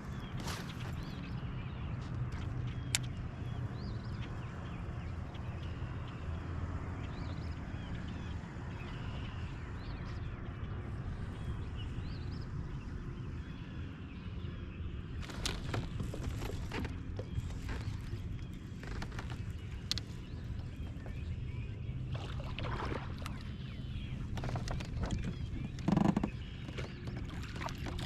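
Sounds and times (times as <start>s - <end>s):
birds chirping faintly: 0.0s - 28.0s.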